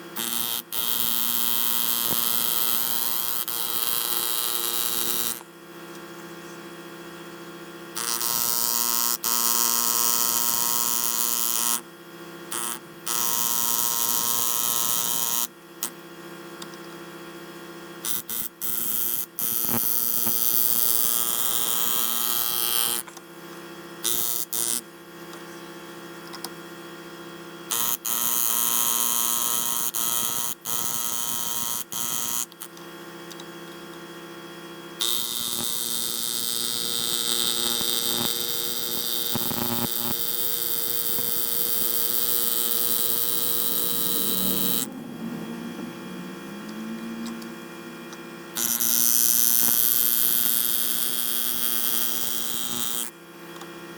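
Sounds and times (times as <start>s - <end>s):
power engraving tool buzzing: 0.0s - 5.5s, 7.9s - 11.8s, 12.4s - 16.0s, 18.0s - 23.1s, 24.0s - 24.9s, 27.7s - 32.8s, 35.0s - 44.9s, 46.6s - 53.2s
steady hum: 40.9s - 48.6s.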